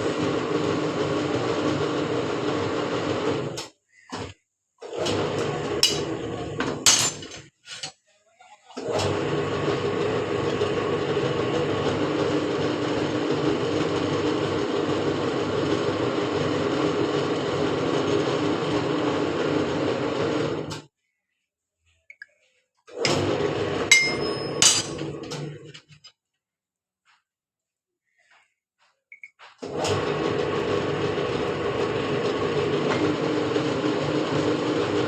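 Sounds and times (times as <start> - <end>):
sharp metallic knocks: 23.9 - 25.0.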